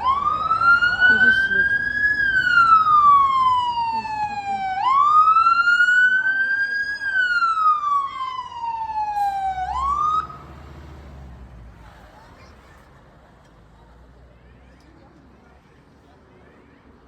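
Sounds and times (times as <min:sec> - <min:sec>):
siren wailing: 0:00.0 - 0:10.4.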